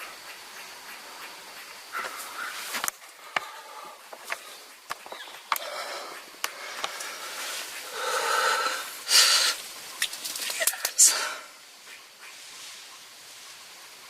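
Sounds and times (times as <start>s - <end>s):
man breathing hard: 1.9s - 4.8s, 5.4s - 9.7s, 11.0s - 11.6s
man whispering: 10.6s - 11.6s.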